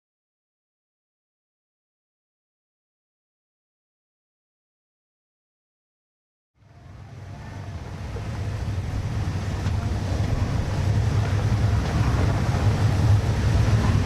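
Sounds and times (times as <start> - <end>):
vehicle engine rumble: 6.6 - 14.0
wind noise on microphone: 6.7 - 14.0.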